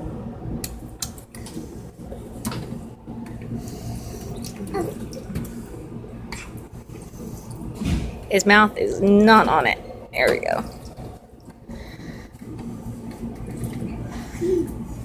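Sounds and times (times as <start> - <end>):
water running and splashing: 10.2 - 11.6.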